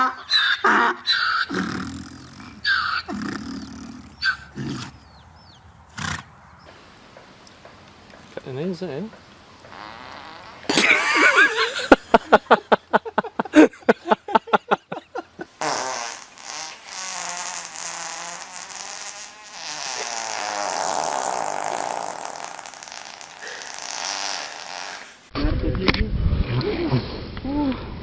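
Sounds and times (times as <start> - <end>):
animal fart sputtering: 9.7 - 10.8, 15.6 - 25.3.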